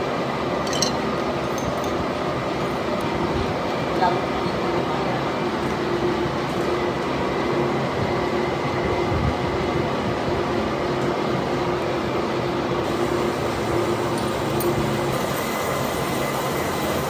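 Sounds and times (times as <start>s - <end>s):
lathe humming: 12.8s - 17.0s.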